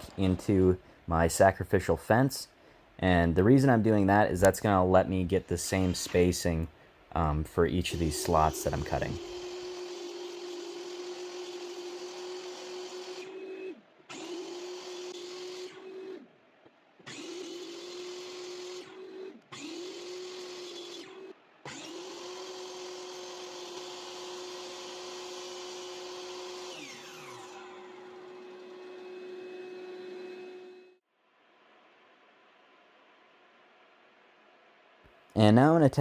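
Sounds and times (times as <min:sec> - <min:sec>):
motor winding down whine: 0:07.7 - 0:16.3, 0:17.0 - 0:31.0
power tool motor hum and hiss: 0:07.9 - 0:13.4.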